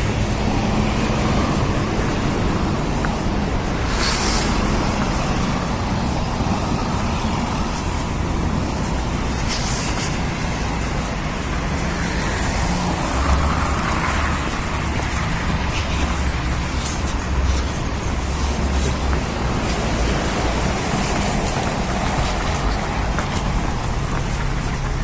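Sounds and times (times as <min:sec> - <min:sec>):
rumble of passing cars: 0:00.0 - 0:25.0
vehicles hissing by: 0:00.0 - 0:25.0.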